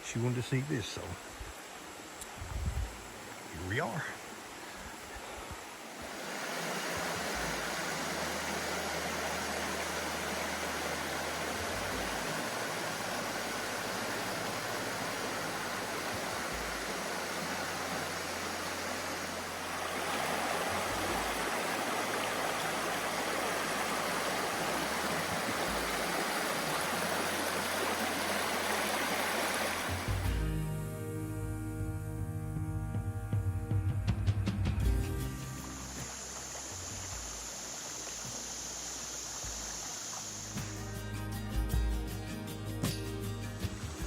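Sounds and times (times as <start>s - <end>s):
water rushing over rocks: 1.2s - 30.3s, 35.6s - 40.8s.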